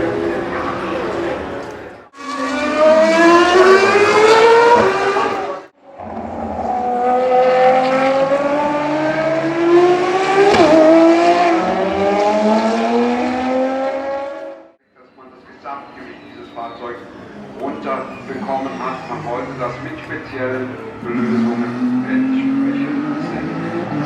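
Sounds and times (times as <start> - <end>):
race car engines accelerating: 0.0 - 24.0.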